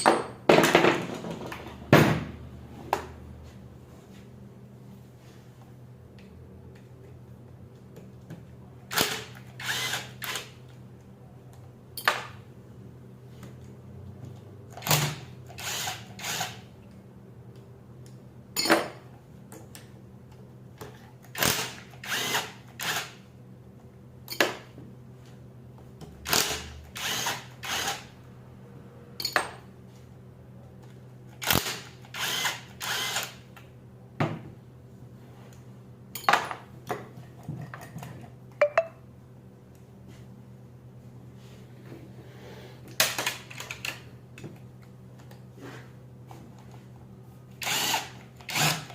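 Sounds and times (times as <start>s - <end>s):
power drill pulsing bursts: 31.5s - 33.4s, 47.6s - 48.9s.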